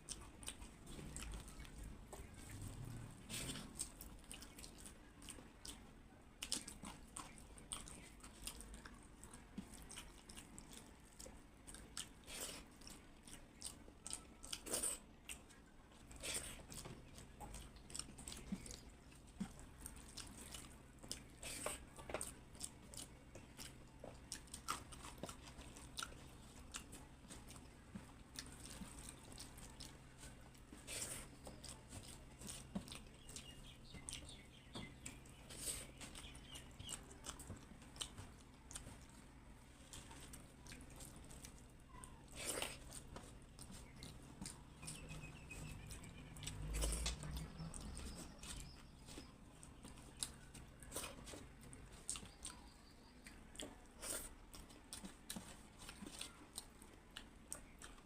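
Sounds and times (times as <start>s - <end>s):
person chewing crunchy food: 0.0s - 58.0s.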